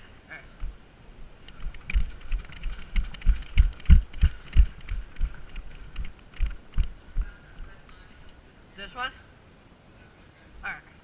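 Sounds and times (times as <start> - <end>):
gear clicking and rattling: 1.4 - 7.7.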